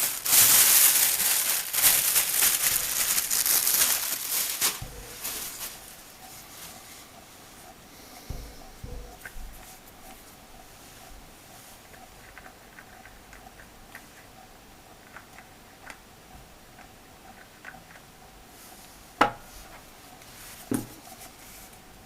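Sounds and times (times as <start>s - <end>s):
clicks of handling packaging: 0.0s - 5.9s
loud knocks: 8.3s - 9.6s.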